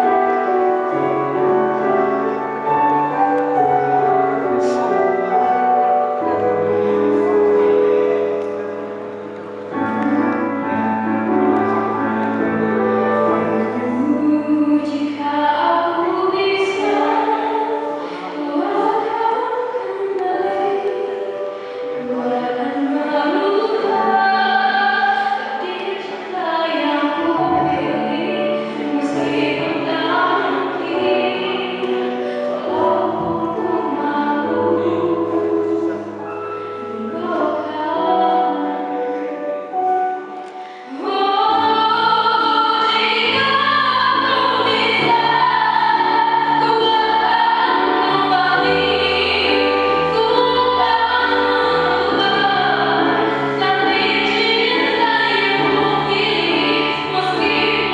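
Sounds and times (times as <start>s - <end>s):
vocal group singing in harmony: 40.8s - 57.9s.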